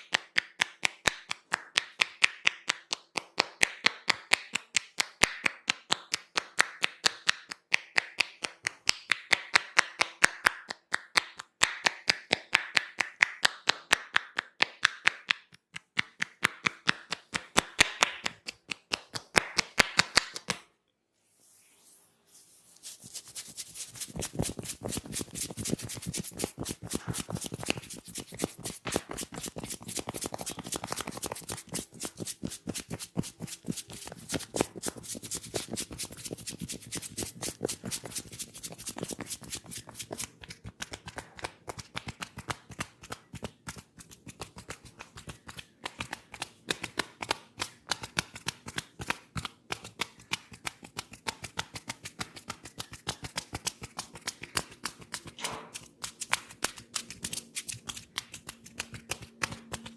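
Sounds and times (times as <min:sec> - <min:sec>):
crackling patter of hands on scalp: 0:22.6 - 0:59.9.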